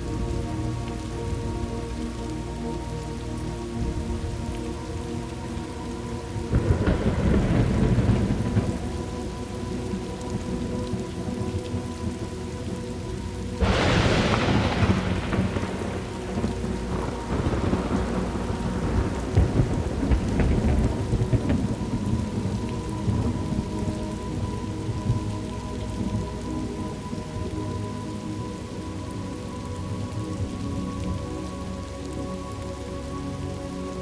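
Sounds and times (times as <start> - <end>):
steady rain: 0.0 - 34.0
thunder crack and rumble: 6.5 - 9.4, 13.6 - 27.4.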